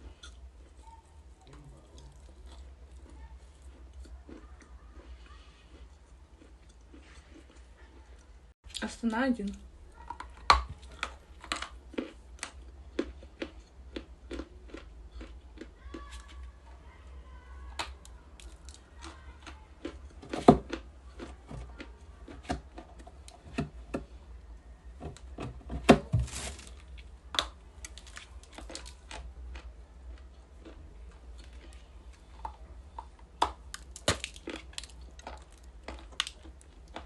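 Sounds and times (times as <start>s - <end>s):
ice crunching between teeth: 33.6s - 37.0s.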